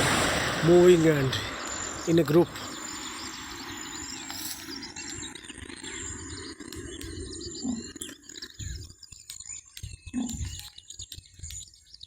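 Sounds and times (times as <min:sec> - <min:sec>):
low hum: 0:00.0 - 0:08.8
high insect whine: 0:00.0 - 0:08.9
birds chirping: 0:00.0 - 0:12.0.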